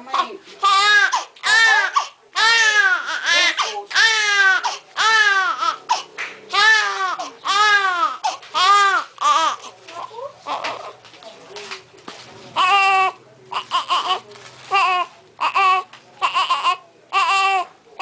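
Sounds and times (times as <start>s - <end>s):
newborn baby crying: 0.1s - 11.0s, 12.6s - 17.7s
baby gasping: 0.2s - 5.0s, 5.6s - 6.2s, 6.8s - 10.9s.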